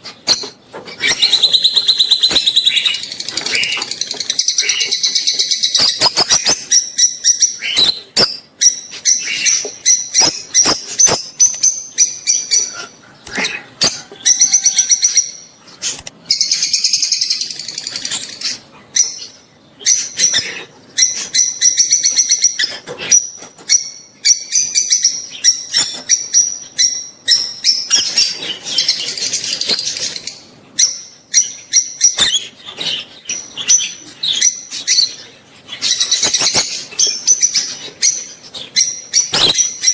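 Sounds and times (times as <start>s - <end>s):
lovebirds chirping shrilly: 0.0s - 39.9s.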